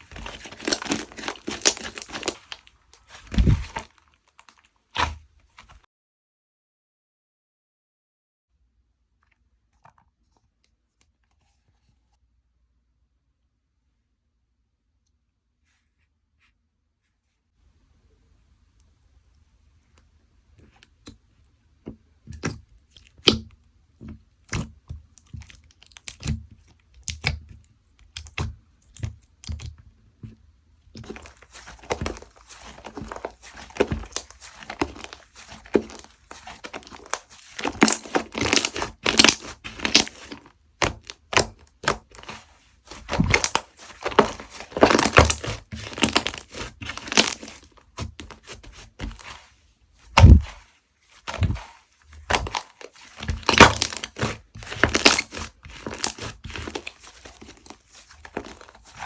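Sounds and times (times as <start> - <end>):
sticky slime clicks and crackling: 0.1 - 5.2, 24.5 - 29.7, 31.0 - 49.3, 52.3 - 59.0.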